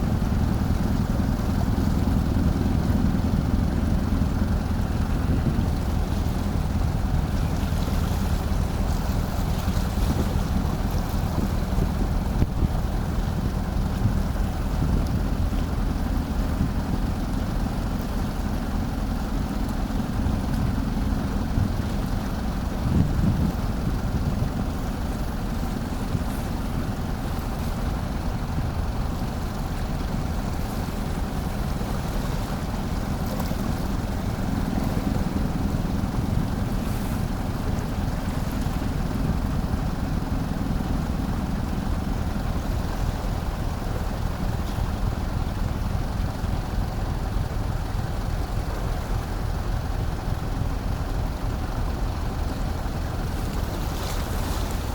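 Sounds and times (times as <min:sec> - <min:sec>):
wind noise on microphone: 0:00.0 - 0:17.5, 0:20.0 - 0:27.1
ship engines droning: 0:00.0 - 0:54.9.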